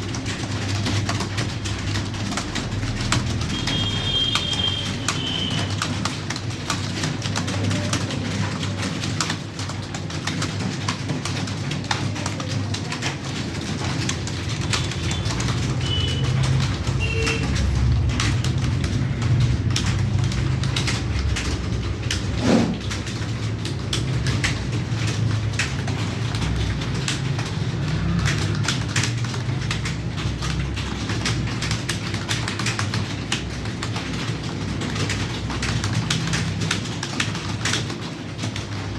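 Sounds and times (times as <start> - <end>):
computer keyboard typing: 0.0 - 38.9.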